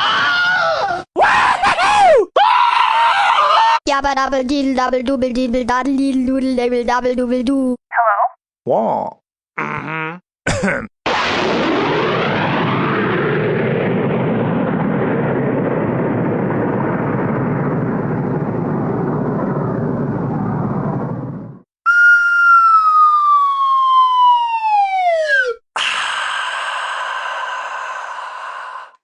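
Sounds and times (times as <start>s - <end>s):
cartoon falling whistle: 21.8s - 25.6s.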